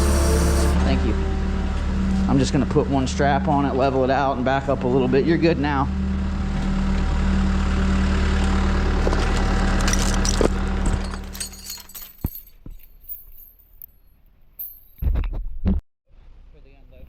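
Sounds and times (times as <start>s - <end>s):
diesel engine humming: 0.0s - 11.9s.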